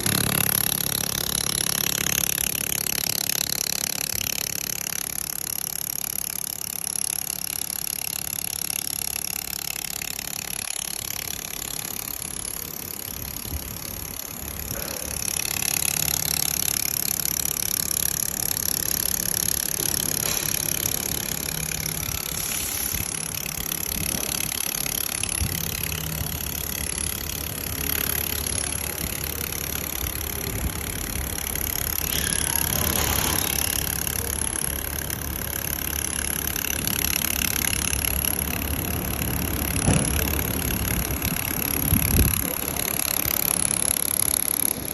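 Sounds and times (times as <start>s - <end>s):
welding machine mechanical hum: 0.0s - 44.9s
thin high whine: 20.3s - 24.4s.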